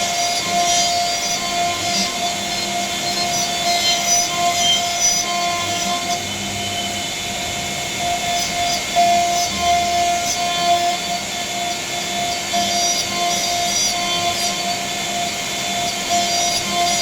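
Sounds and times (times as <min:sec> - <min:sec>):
router spindle whine: 0:00.0 - 0:17.0.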